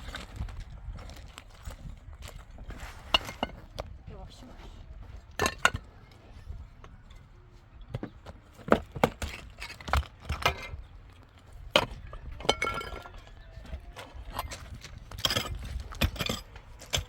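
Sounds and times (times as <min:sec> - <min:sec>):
hard objects knocking and clinking: 0:11.7 - 0:13.3, 0:14.3 - 0:17.0.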